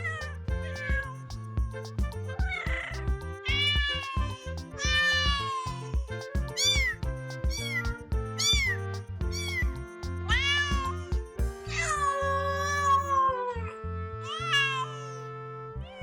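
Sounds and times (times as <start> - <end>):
background music with steady beat: 0.0 - 12.2
kittens meowing: 3.5 - 5.7.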